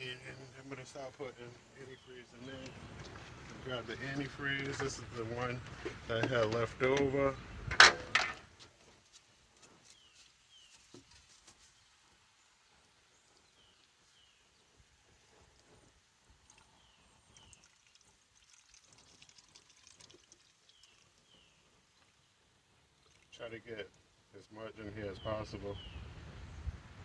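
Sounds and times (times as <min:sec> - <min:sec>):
bird chirping: 0:00.0 - 0:08.1, 0:09.8 - 0:11.0, 0:16.5 - 0:18.1, 0:20.6 - 0:23.1, 0:24.6 - 0:26.7
liquid trickling into radiator: 0:02.2 - 0:07.2, 0:16.4 - 0:22.2, 0:22.9 - 0:24.0.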